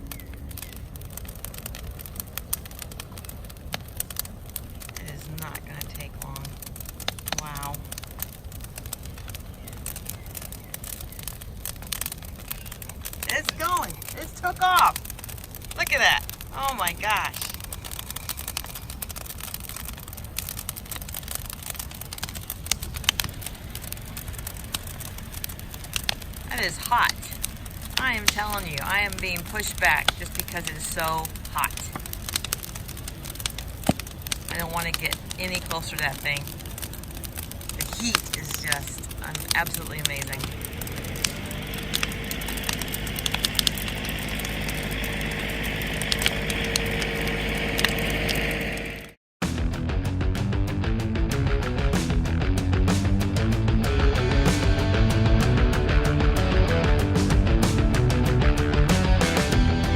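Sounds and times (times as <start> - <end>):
bonfire crackling and popping: 0.0 - 59.9
fire low rumble: 0.0 - 59.9
low engine hum: 17.4 - 30.6, 36.4 - 49.2, 52.0 - 59.9.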